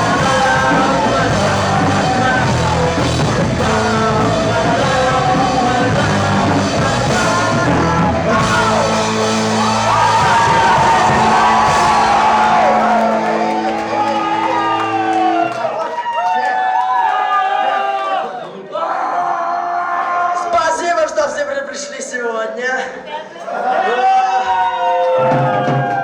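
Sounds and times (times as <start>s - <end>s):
person singing: 0.0s - 15.6s
rock band playing live: 0.0s - 15.8s.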